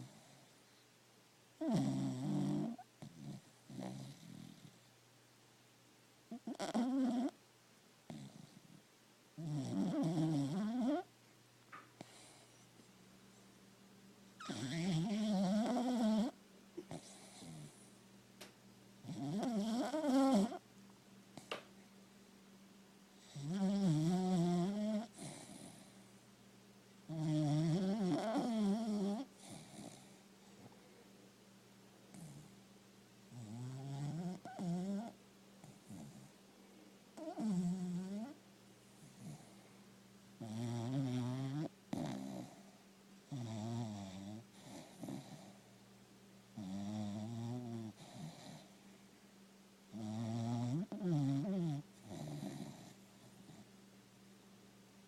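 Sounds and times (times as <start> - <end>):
dog snoring: 0.0 - 0.8, 1.6 - 4.9, 6.3 - 7.4, 8.1 - 8.8, 9.4 - 11.1, 12.0 - 12.7, 14.4 - 17.9, 19.0 - 20.6, 23.2 - 26.0, 27.1 - 30.2, 32.1 - 32.6, 33.3 - 36.4, 37.2 - 38.4, 39.0 - 39.6, 40.4 - 45.7, 46.6 - 48.8, 49.9 - 53.7
dog breathing quietly: 12.0 - 13.5.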